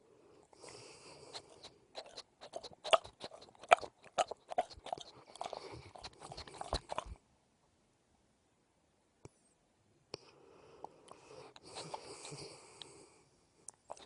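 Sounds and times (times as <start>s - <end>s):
dog smacking and chewing: 1.3s - 7.2s, 11.6s - 12.4s.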